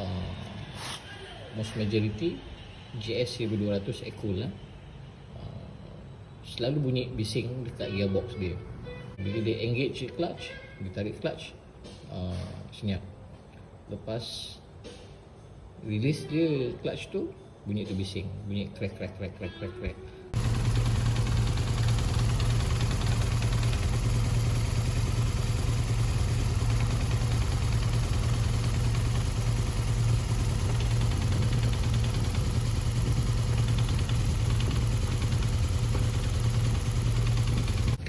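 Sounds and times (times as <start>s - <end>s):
gearbox rattle: 20.4s - 38.0s
motorcycle engine idling: 20.4s - 38.0s.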